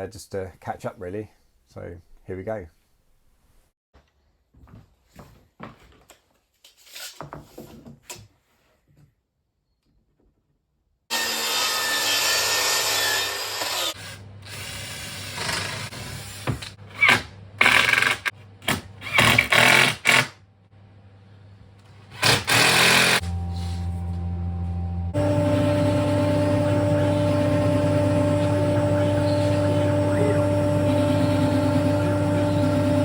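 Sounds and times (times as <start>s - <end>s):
power tool whirring: 22.1s - 24.2s, 25.1s - 33.0s
power tool starting and stopping: 22.1s - 33.0s
low motor hum: 23.1s - 33.0s.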